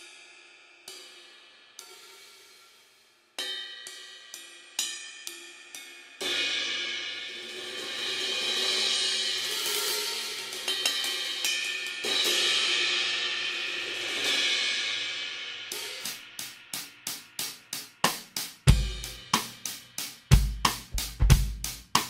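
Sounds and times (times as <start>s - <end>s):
hi-hat beat: 15.6s - 22.0s
kick drum: 18.7s - 19.2s, 20.3s - 22.0s.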